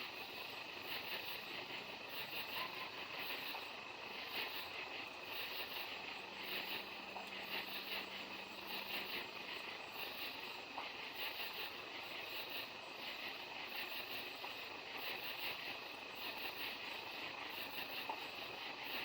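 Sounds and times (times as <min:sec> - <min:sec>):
background hiss: 0:00.0 - 0:19.0
insects trilling: 0:00.0 - 0:19.0.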